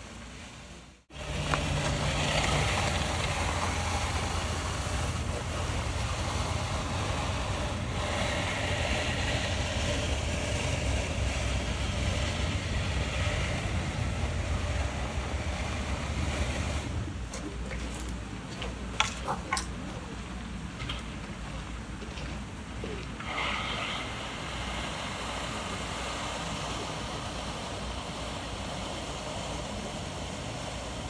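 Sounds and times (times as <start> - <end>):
gravel being raked: 1.1 - 19.5.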